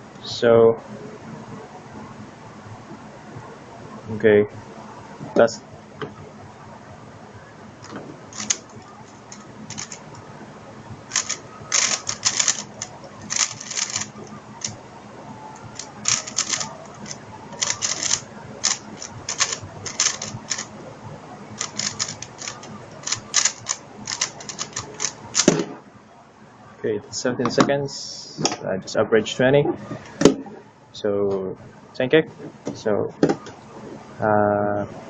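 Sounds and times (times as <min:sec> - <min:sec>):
puzzle cube plastic clicking: 0:08.4 - 0:10.0, 0:11.1 - 0:14.8, 0:15.8 - 0:20.7, 0:21.6 - 0:25.5.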